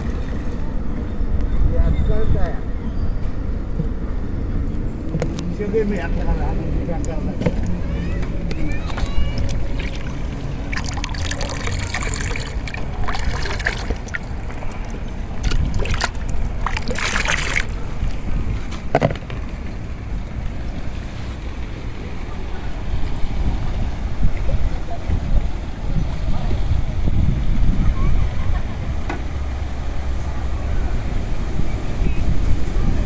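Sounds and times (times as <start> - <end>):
wind rumble on microphone: 0.0 - 33.0
water splashing: 4.6 - 25.2.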